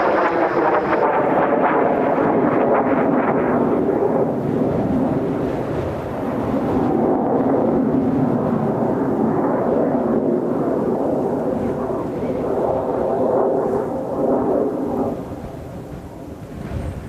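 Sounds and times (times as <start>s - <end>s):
jet aircraft rumble: 0.0s - 17.0s.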